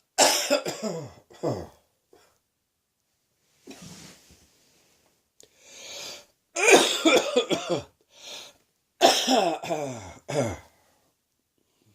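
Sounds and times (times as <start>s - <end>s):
person coughing harshly: 0.2s - 1.8s, 6.6s - 8.0s, 9.0s - 10.7s
person drawing breath: 5.4s - 6.3s, 8.1s - 8.6s.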